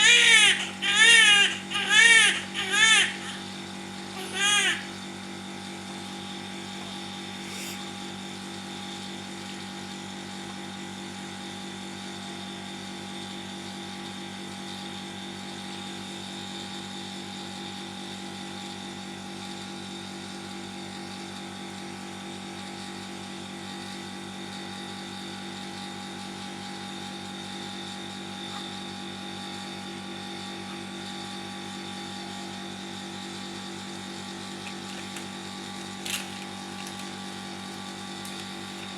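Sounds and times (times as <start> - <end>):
electric motor humming and rattling: 32.4 - 38.9.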